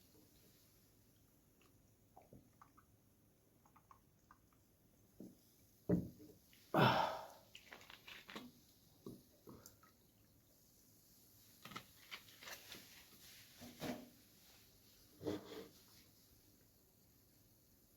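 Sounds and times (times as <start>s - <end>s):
wet chewing and mouth clicks: 7.5s - 8.6s.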